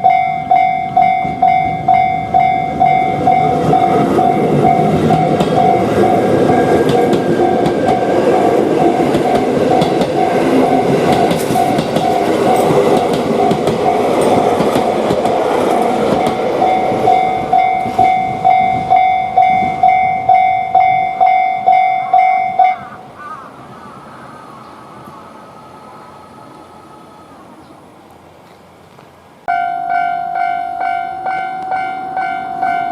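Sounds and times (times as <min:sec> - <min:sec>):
level-crossing signal ringing: 0:00.0 - 0:14.7, 0:15.8 - 0:23.2, 0:29.5 - 0:32.9
train wheel clatter: 0:00.1 - 0:22.8.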